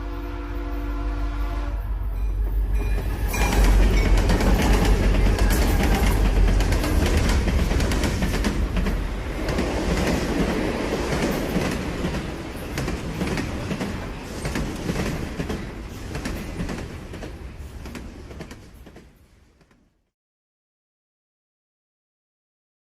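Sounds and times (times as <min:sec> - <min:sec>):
train wheels clicking on rails: 0:02.2 - 0:19.8.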